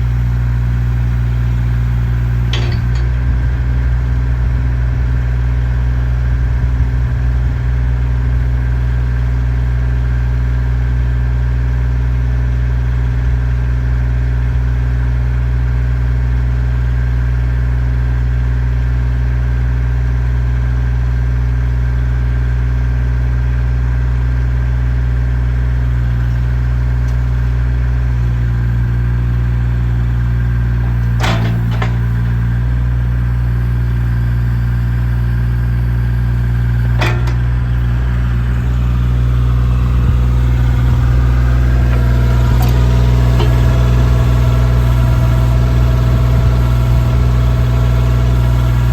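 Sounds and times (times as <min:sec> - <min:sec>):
excavator diesel engine idling: 0:00.0 - 0:48.9
metal clank: 0:02.3 - 0:03.4, 0:30.7 - 0:33.5, 0:35.8 - 0:45.5.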